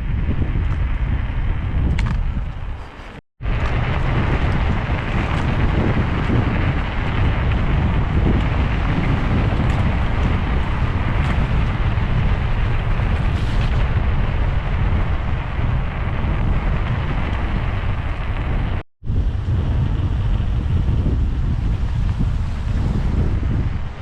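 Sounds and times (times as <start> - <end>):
wind buffeting microphone: 0.0 - 24.0
tyres rolling on wet track: 2.8 - 18.8.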